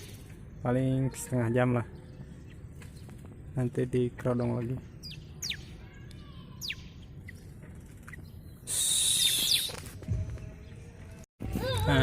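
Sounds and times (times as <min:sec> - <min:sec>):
songbirds chirping: 0:00.0 - 0:12.0
hissy bird burst: 0:08.6 - 0:09.7.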